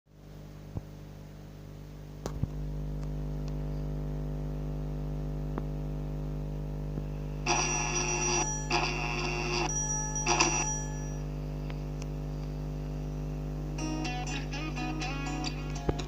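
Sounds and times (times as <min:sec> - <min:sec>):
steady low hum: 0:00.2 - 0:16.0
alarm ringing in bursts: 0:07.4 - 0:11.4.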